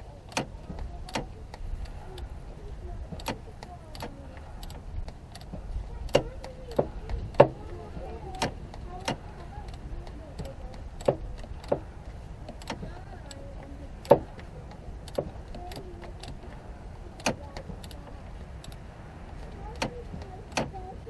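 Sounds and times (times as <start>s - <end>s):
wrench clicking on metal nut: 3.2s - 7.5s, 8.3s - 11.8s, 14.0s - 16.5s.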